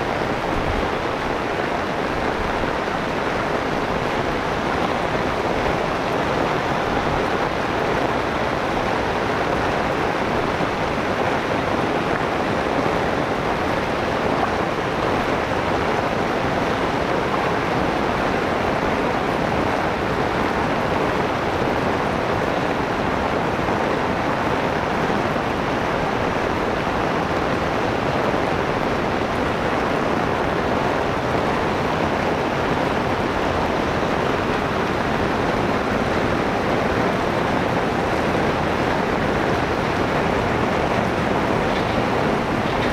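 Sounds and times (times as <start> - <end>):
heavy rain: 0.0 - 42.9.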